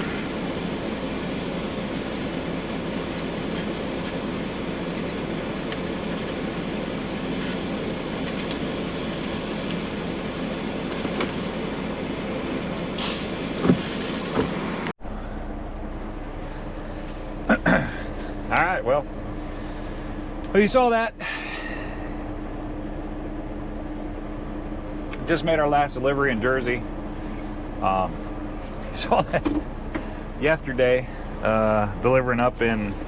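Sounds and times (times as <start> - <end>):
road noise: 0.0 - 33.0
truck engine drone: 0.0 - 33.0.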